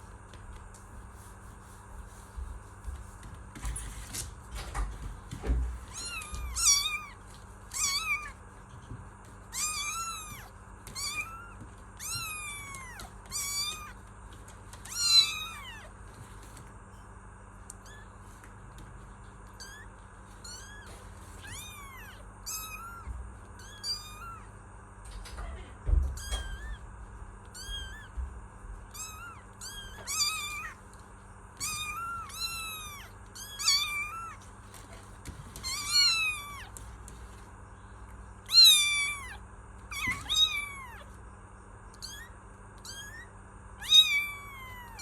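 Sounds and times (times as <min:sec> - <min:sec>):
kittens meowing: 0:05.9 - 0:08.4, 0:09.4 - 0:14.1, 0:14.8 - 0:16.0, 0:17.7 - 0:18.2, 0:19.4 - 0:24.6, 0:26.0 - 0:28.2, 0:28.8 - 0:30.8, 0:31.6 - 0:34.4, 0:35.5 - 0:36.8, 0:38.4 - 0:41.2, 0:41.9 - 0:45.0.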